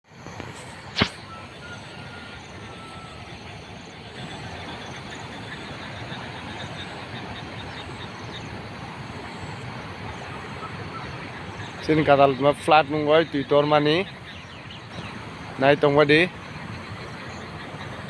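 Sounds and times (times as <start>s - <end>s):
sharp click: 0.4s - 1.2s
floodwater rushing: 0.7s - 14.2s.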